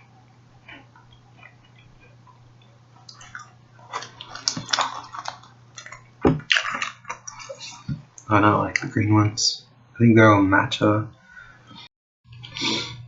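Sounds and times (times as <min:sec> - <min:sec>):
close-up chewing: 0:00.6 - 0:07.9
wet mouth sounds: 0:03.0 - 0:07.9.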